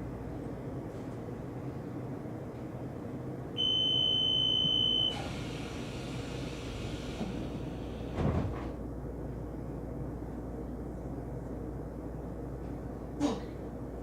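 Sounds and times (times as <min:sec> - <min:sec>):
electronic warning beep: 0:03.6 - 0:05.2
train rumble: 0:05.1 - 0:14.0.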